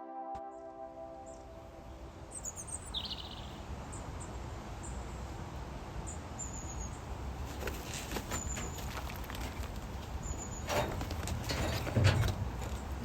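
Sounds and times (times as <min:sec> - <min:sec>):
small birds chirping: 0:01.3 - 0:05.3, 0:06.0 - 0:07.1, 0:10.0 - 0:10.7.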